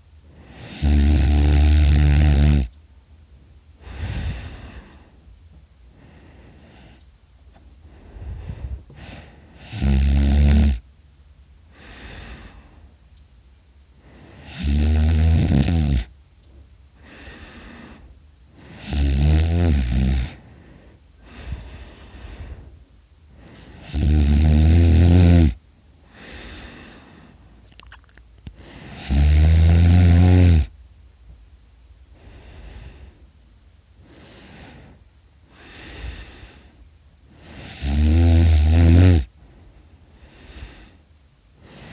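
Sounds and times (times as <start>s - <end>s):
person snoring loudly: 0.4s - 2.7s, 8.3s - 10.8s, 14.0s - 16.1s, 18.6s - 20.4s, 23.4s - 27.2s, 28.6s - 30.7s, 37.4s - 39.3s
soft breathing: 3.4s - 9.8s, 11.6s - 14.6s, 16.1s - 19.0s, 20.1s - 24.0s, 25.8s - 29.1s, 32.0s - 37.8s, 39.2s - 41.9s.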